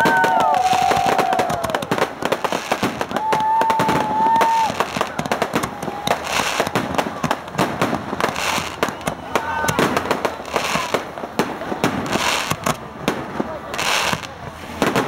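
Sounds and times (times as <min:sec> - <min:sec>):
firework whistle: 0:00.0 - 0:07.3, 0:08.3 - 0:11.1
fireworks crackling and banging: 0:00.0 - 0:15.0.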